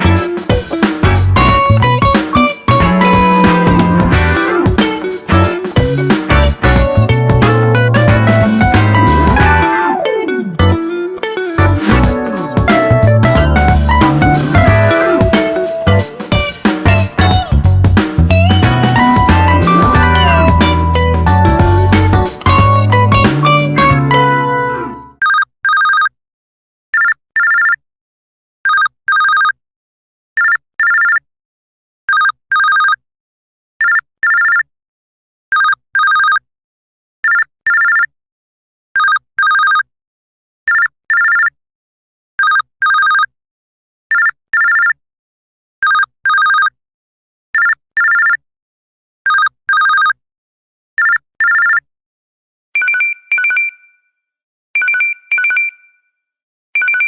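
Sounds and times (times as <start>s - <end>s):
two-tone ringtone: 1.5s - 7.0s, 7.8s - 17.6s, 18.3s - 26.1s, 27.0s - 27.8s, 40.7s - 41.5s, 44.1s - 45.0s, 45.8s - 46.7s, 47.6s - 48.4s, 49.3s - 50.2s, 51.0s - 51.8s, 52.8s - 53.9s, 54.8s - 56.0s, 56.8s - 57.0s
electronic double ringtone: 2.4s - 3.5s.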